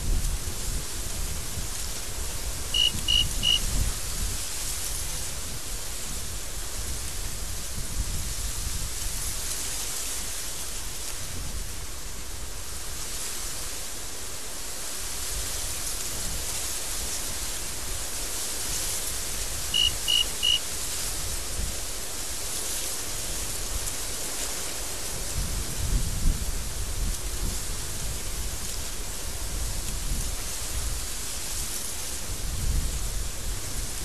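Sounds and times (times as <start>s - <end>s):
wind blowing in a storm: 0.0s - 34.0s
short high beeps: 2.8s - 3.6s, 19.8s - 20.6s.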